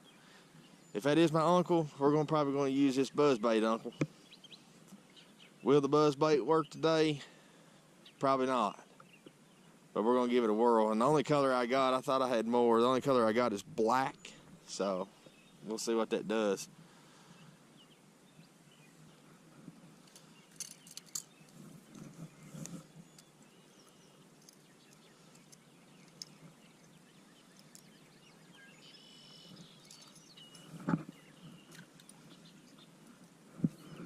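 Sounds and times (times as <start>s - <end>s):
faint outdoor ambience: 0.0s - 34.0s
high chirping call: 23.1s - 32.9s.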